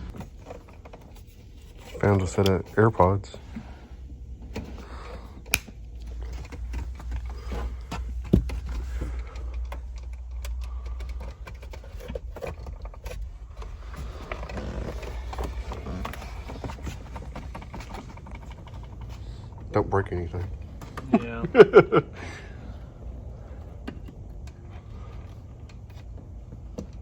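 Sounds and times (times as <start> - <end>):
low steady hum: 0.0 - 27.0
tools clinking and rattling: 5.3 - 19.7.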